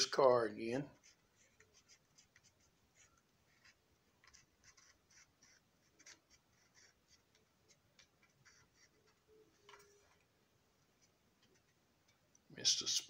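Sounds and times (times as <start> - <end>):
scratchy strokes on plastic: 0.9 - 10.2.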